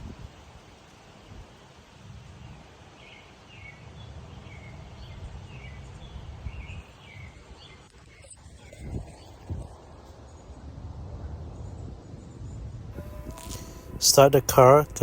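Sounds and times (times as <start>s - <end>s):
birds chirping: 13.0s - 15.0s.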